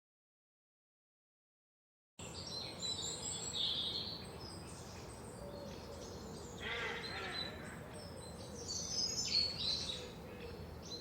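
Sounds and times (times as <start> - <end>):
birds chirping: 2.2 - 11.0
outdoor background hiss: 2.2 - 11.0.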